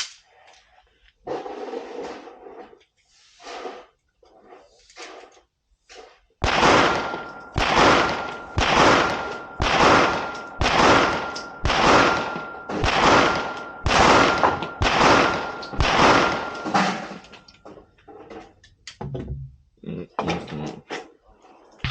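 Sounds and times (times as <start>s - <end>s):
pistol shots with echo: 6.4s - 17.3s.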